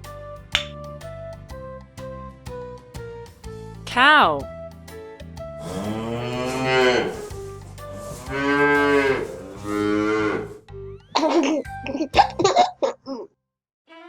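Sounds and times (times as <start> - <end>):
background music: 0.0 - 12.8
cow mooing: 5.6 - 7.4, 8.1 - 10.6.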